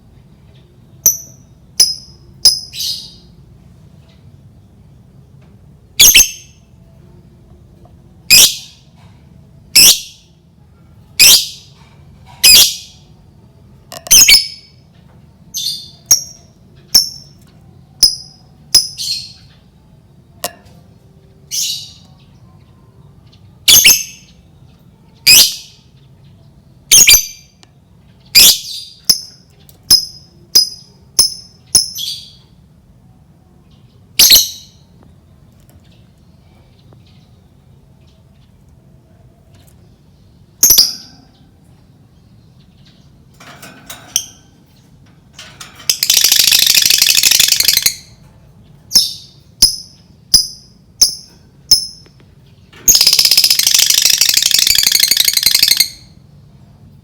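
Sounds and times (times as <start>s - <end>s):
faint low hum: 0.0s - 57.0s
lovebird shrill calls: 45.9s - 48.1s, 52.9s - 56.0s.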